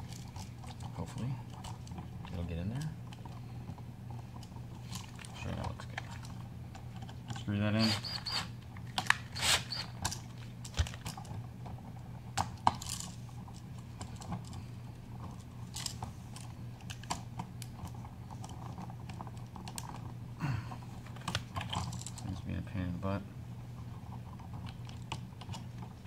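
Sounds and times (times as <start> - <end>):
steady low hum: 0.0 - 26.0
screwdriver clicking and scraping: 7.8 - 10.1.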